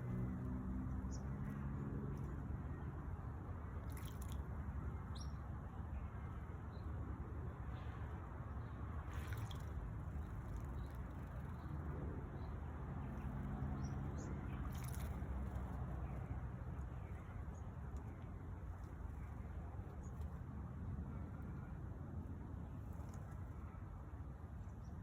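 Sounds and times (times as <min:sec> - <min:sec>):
birds splashing water: 0:03.6 - 0:05.3, 0:08.9 - 0:11.9, 0:13.1 - 0:16.4.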